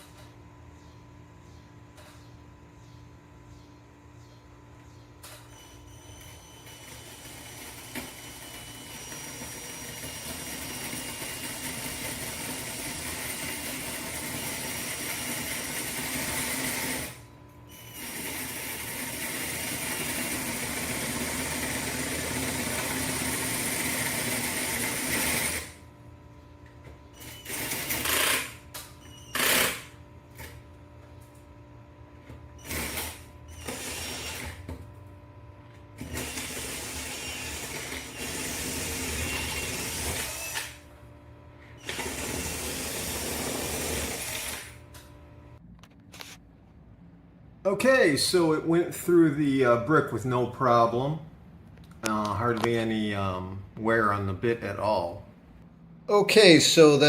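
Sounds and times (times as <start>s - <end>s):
power drill drilling into brick: 6.6s - 17.2s, 17.8s - 25.7s, 27.2s - 28.6s, 29.3s - 29.9s, 32.6s - 34.6s, 36.0s - 40.8s, 41.8s - 44.8s.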